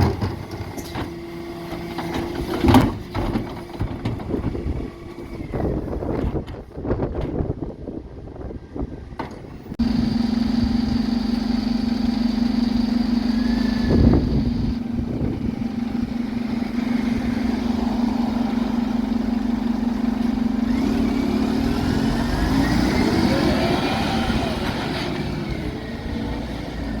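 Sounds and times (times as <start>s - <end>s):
truck engine running: 9.6s - 27.0s.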